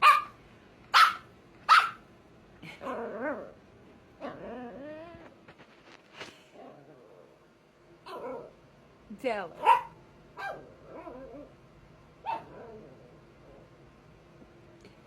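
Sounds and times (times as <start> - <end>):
puppy barking: 0.0 - 2.0, 8.0 - 8.5, 9.6 - 11.2, 12.2 - 12.6
puppy whine-growling: 2.8 - 3.6, 4.2 - 5.4, 6.5 - 7.4, 10.4 - 11.6, 12.3 - 13.8.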